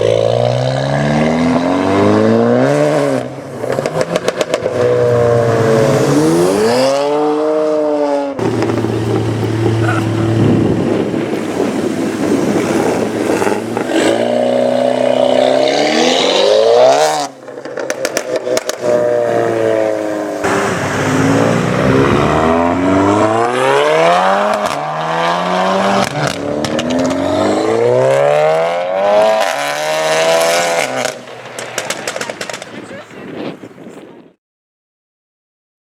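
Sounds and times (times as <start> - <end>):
car engine accelerating hard: 0.0 - 32.6
exhaust crackles and pops: 8.4 - 14.1, 17.3 - 19.2, 26.0 - 27.3, 30.4 - 33.7.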